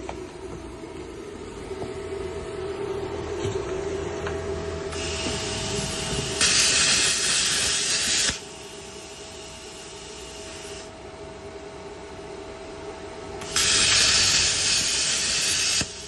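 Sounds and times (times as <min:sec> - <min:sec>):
machine hum: 0:00.0 - 0:16.0
air hissing from torch: 0:04.9 - 0:10.9, 0:13.4 - 0:16.0
plasma torch firing harsh hiss: 0:04.9 - 0:10.9, 0:13.4 - 0:16.0.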